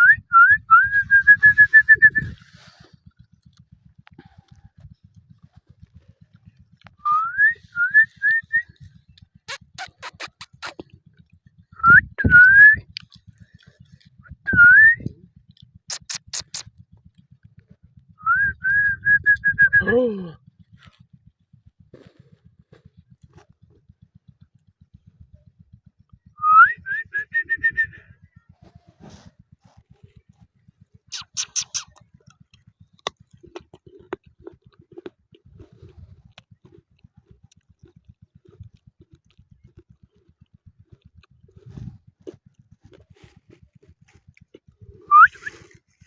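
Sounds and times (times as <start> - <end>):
rising whistles: 0.0 - 2.4, 26.4 - 28.0, 45.1 - 45.5
faint rapid low ticking: 0.2 - 46.0
sharp clicks: 9.1 - 11.4, 15.5 - 17.2
parrot whistling: 31.1 - 31.9, 45.1 - 45.5.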